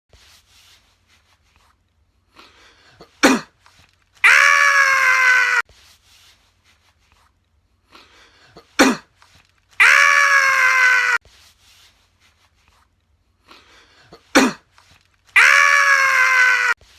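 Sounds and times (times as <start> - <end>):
person sneezing: 2.8 - 3.7, 8.4 - 9.3, 14.0 - 14.8
high-pitched cry: 4.2 - 5.6, 9.7 - 11.2, 15.3 - 16.8.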